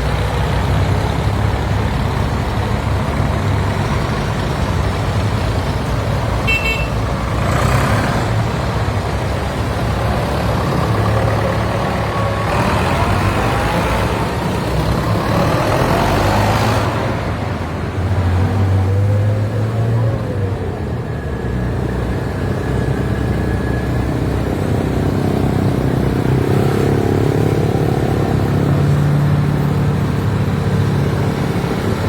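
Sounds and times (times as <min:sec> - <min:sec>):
tractor engines rumbling: 0:00.0 - 0:32.0.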